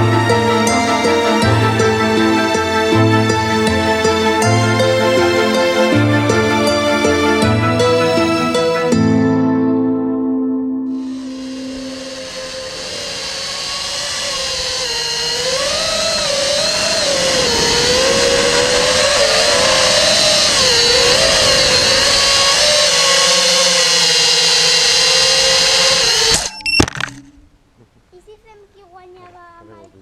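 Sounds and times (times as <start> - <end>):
drone propellers whining: 0.0 - 9.4, 10.9 - 27.4
rushing air hiss: 11.0 - 15.4.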